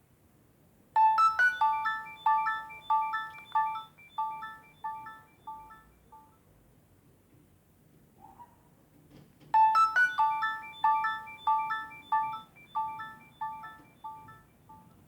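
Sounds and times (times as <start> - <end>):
mobile phone ringtone melody: 1.0 - 6.3, 9.6 - 14.9.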